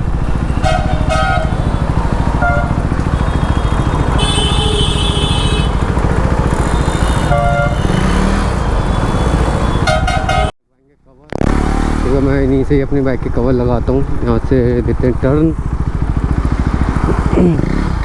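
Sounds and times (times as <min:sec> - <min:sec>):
motorcycle engine running: 0:00.0 - 0:10.5, 0:11.3 - 0:18.0
long high-pitched horn: 0:00.5 - 0:05.8, 0:06.7 - 0:08.2
short horn beeps: 0:06.7 - 0:10.5.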